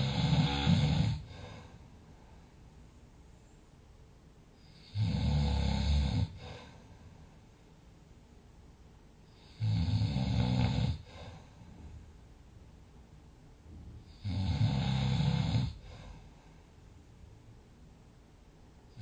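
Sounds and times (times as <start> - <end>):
loud deep snoring: 0.0 - 1.6, 4.6 - 6.7, 9.4 - 11.4, 14.1 - 16.0
soft breathing out: 15.8 - 16.8.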